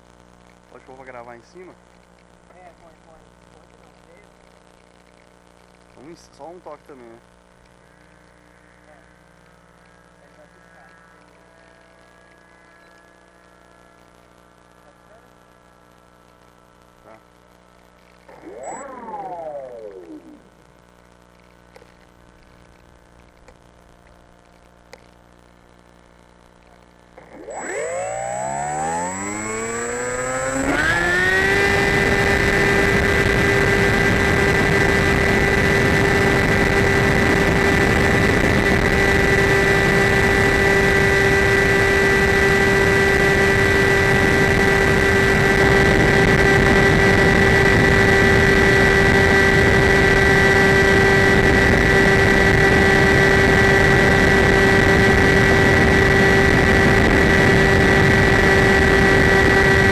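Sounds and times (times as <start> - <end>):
model plane motor whine: 9.8 - 14.1, 18.3 - 20.5, 27.2 - 59.9.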